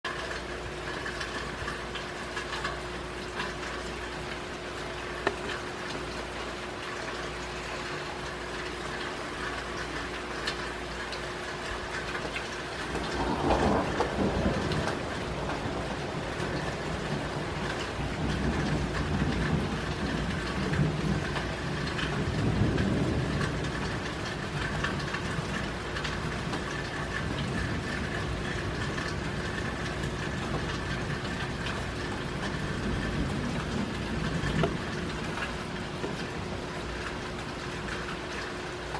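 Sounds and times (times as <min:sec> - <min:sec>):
steady rain: 0:00.0 - 0:38.9
thunder rumbling: 0:12.7 - 0:38.4.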